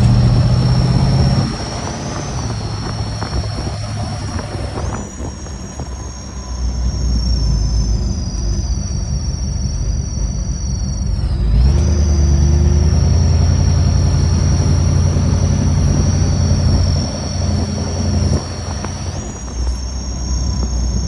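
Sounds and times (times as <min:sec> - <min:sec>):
high-pitched whine: 0:00.0 - 0:21.0
vehicle engine rumble: 0:00.0 - 0:21.0.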